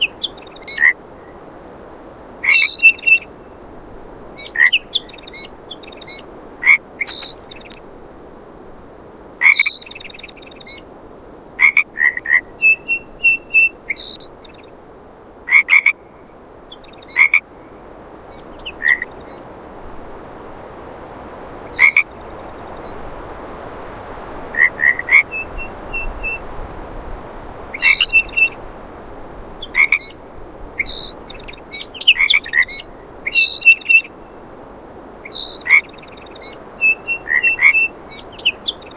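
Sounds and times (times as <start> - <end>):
background hiss: 0.0 - 38.9
frogs croaking: 4.4 - 7.9, 9.4 - 10.8, 11.6 - 14.8, 15.5 - 19.4, 21.6 - 23.0, 24.5 - 26.4, 27.7 - 28.6, 29.6 - 30.2, 30.8 - 34.2, 35.2 - 38.9
bird notes: 7.0 - 7.8.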